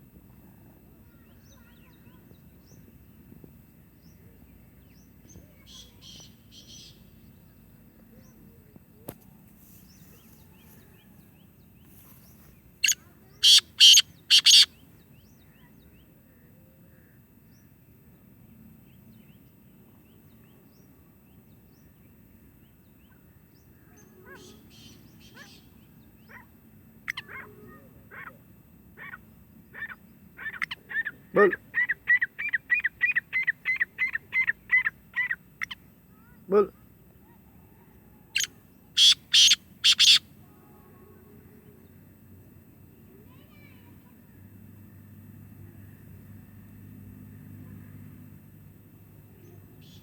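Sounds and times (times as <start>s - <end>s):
birds calling: 9.6s - 15.4s, 27.1s - 35.9s, 38.4s - 40.3s.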